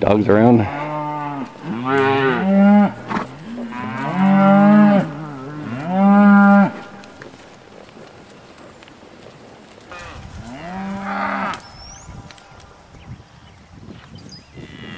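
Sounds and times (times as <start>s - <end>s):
cattle mooing: 0.4s - 7.2s, 9.9s - 11.6s.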